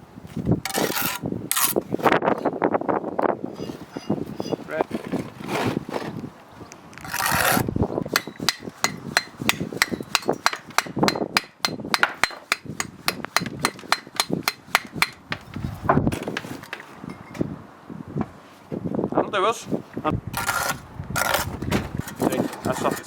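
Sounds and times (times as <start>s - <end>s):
hammer scraping brick: 0.7s - 1.9s, 7.0s - 16.9s, 20.4s - 23.0s
hammer knocking brick: 8.1s - 15.6s.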